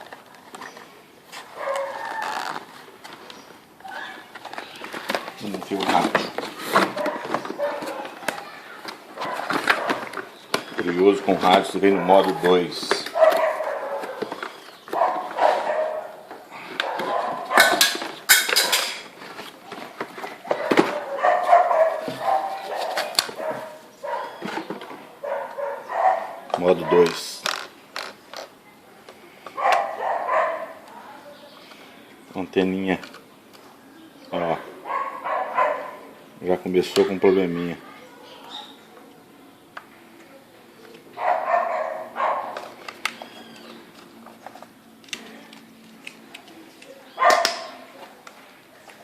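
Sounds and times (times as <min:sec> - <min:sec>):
dog barking: 0:01.6 - 0:02.4, 0:07.0 - 0:08.2, 0:11.9 - 0:12.5, 0:13.1 - 0:14.3, 0:14.9 - 0:16.2, 0:16.8 - 0:17.8, 0:20.5 - 0:24.4, 0:25.2 - 0:27.2, 0:29.6 - 0:30.8, 0:34.6 - 0:36.1, 0:41.2 - 0:42.6, 0:47.2 - 0:47.8
clicks of things being handled: 0:16.3 - 0:21.1, 0:42.5 - 0:49.0.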